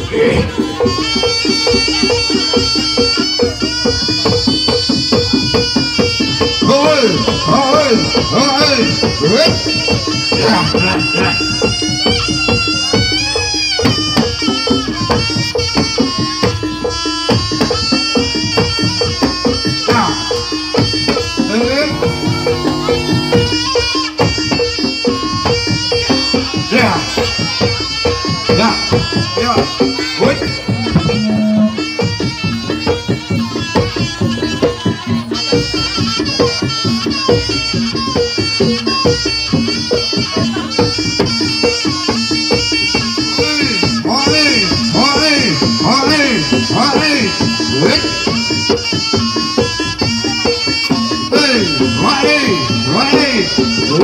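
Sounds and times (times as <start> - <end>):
hand drums: 0.0 - 54.0
shrill reed wind melody: 0.7 - 35.1.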